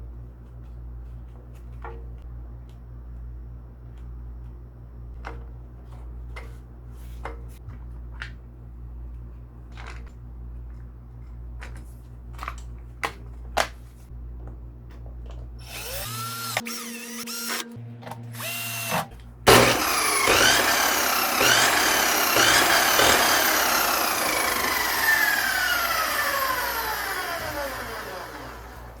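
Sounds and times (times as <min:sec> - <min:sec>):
cut-off saw motor whine: 0:15.6 - 0:29.0.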